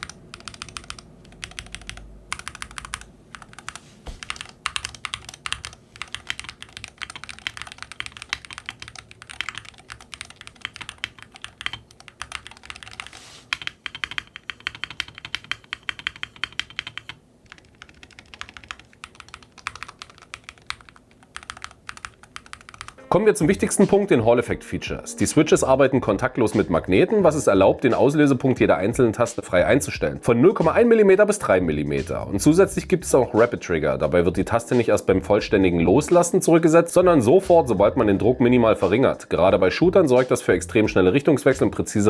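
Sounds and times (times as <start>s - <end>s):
typing on a keyboard: 0.0s - 23.0s.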